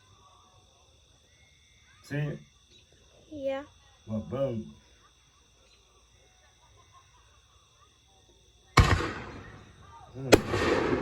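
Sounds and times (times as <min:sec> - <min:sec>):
firework bangs: 0:08.8 - 0:11.0.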